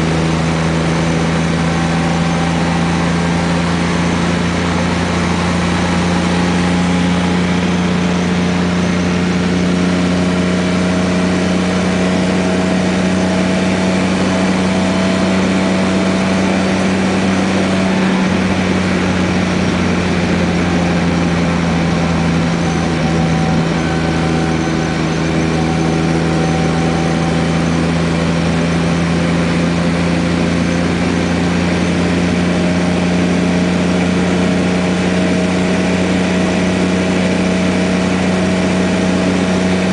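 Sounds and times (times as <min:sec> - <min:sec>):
faint drifting tones: 0:00.0 - 0:30.5
car running gear drone: 0:00.0 - 0:39.9.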